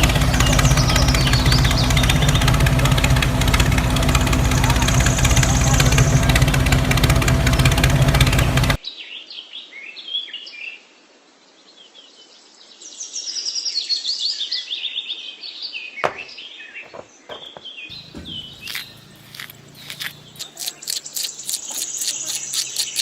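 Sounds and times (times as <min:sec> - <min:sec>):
small birds chirping and singing: 0:00.0 - 0:10.6, 0:11.8 - 0:23.0
sharp clicks: 0:17.9 - 0:23.0.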